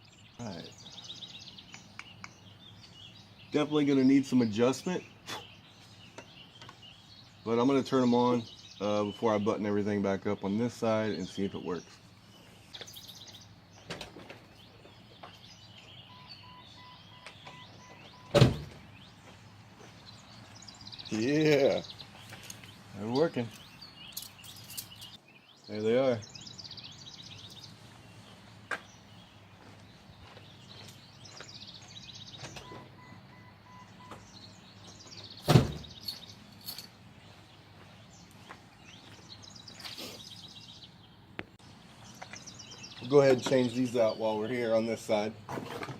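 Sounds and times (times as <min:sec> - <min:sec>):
birds chirping: 0:00.0 - 0:45.9
vehicle warning chime beeping: 0:16.0 - 0:18.4, 0:32.4 - 0:34.4
loud thump: 0:18.4 - 0:18.8, 0:35.5 - 0:35.9.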